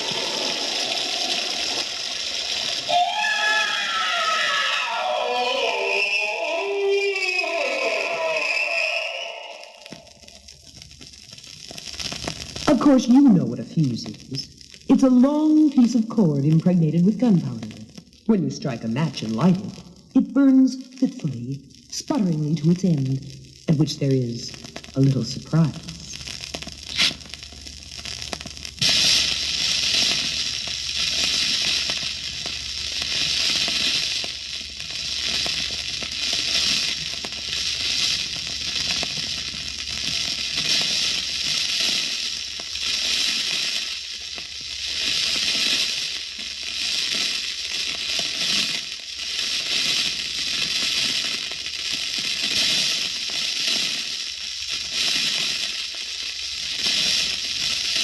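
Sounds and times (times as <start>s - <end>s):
fuse crackling and hissing: 0.0s - 58.0s
match being struck: 26.4s - 27.4s.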